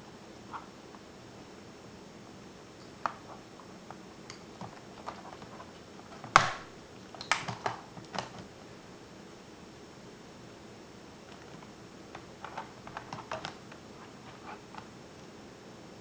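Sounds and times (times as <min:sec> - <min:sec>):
clicks and taps of laptop parts: 0:07.2 - 0:08.4.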